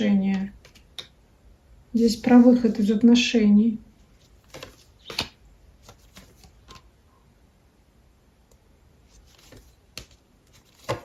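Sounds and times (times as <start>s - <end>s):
card taps and flicks: 4.5s - 6.8s.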